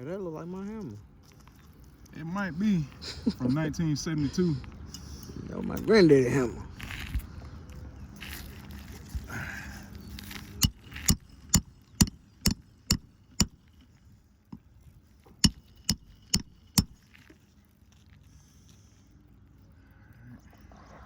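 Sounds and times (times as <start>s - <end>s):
hammer striking nails: 10.6s - 13.6s, 15.4s - 17.0s.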